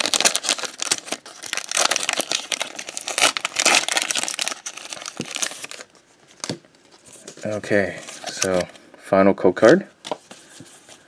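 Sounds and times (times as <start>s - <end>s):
foil wrapper crinkling: 0.0s - 5.9s.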